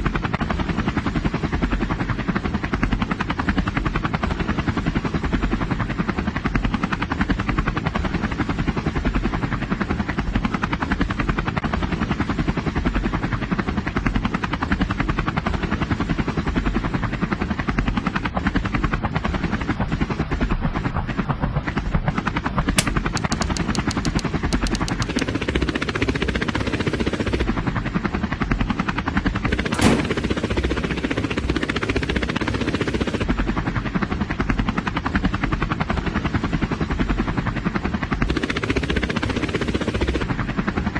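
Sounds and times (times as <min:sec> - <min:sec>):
helicopter rotor chopping: 0:00.0 - 0:40.9
quick run of clicks: 0:22.8 - 0:25.6.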